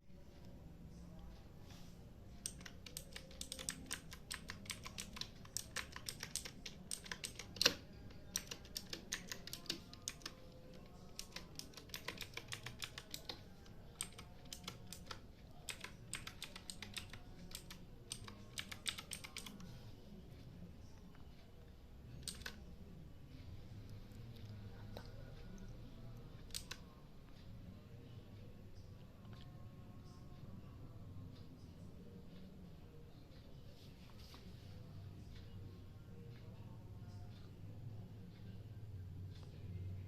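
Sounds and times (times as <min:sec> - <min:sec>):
mechanical keyboard typing: 0:02.4 - 0:19.7, 0:22.1 - 0:22.6, 0:26.3 - 0:26.9.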